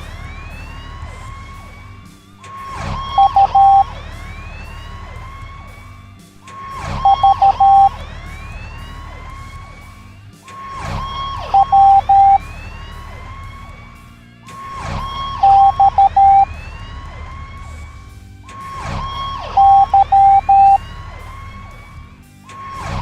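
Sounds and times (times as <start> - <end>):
wailing siren sound effect: 0.0 - 23.0
morse code beeps: 2.7 - 4.0, 6.6 - 8.0, 10.6 - 12.5, 14.6 - 16.5, 18.6 - 20.8.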